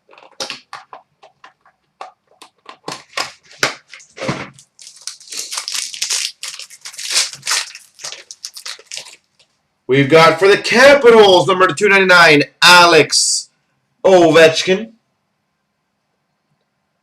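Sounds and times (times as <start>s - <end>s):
card wrapper crinkling and tearing: 0.0s - 9.6s.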